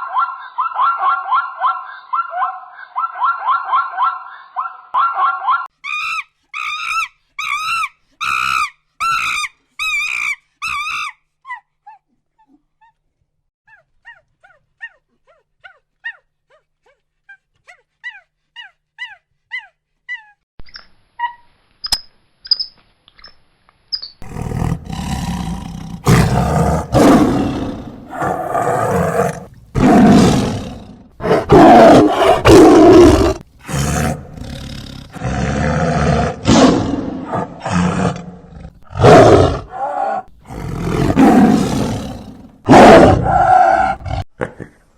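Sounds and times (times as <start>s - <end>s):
faint chirps: 20.6s - 24.2s
lion roaring: 24.2s - 44.2s.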